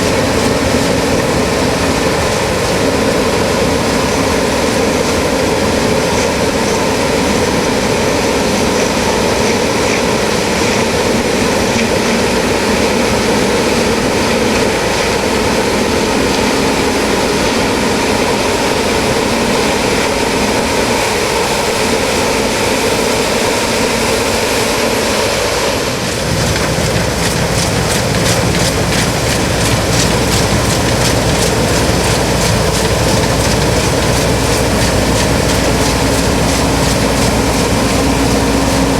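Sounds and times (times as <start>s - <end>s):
combine harvester droning: 0.0s - 38.9s
fast regular clicking: 26.5s - 38.9s.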